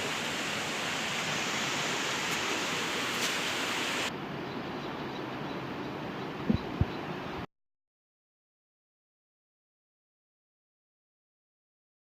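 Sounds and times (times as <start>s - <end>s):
flowing water rushing: 0.0s - 4.4s.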